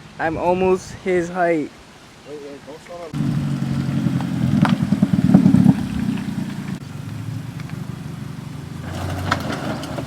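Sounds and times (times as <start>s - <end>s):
car engine running: 3.2s - 10.0s.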